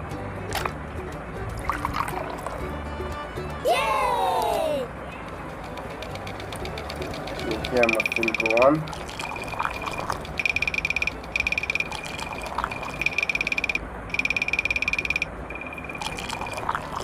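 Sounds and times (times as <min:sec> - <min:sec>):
animal pulsed trilling call: 0:06.6 - 0:16.7.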